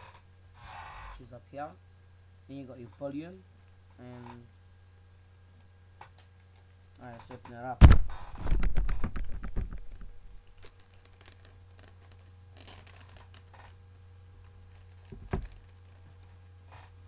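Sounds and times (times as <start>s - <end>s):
packaging crinkling rustle: 8.3s - 17.0s
packaging clicks and scrapes: 8.4s - 13.8s, 14.4s - 17.0s.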